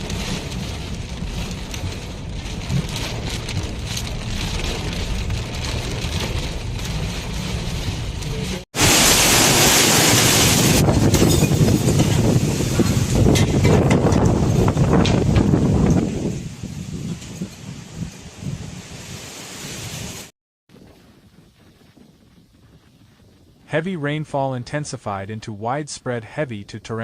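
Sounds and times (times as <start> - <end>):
wind gusts buffeting microphone: 0.0 - 24.7
heavy rain hiss: 8.1 - 10.9, 18.9 - 20.3.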